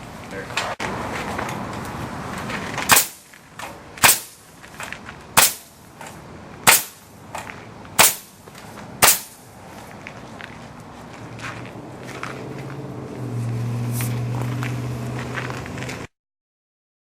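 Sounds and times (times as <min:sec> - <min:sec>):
pneumatic nailer firing into concrete: 0:02.9 - 0:03.3, 0:04.0 - 0:04.4, 0:05.4 - 0:05.7, 0:06.6 - 0:07.1, 0:08.0 - 0:08.4, 0:09.0 - 0:09.4.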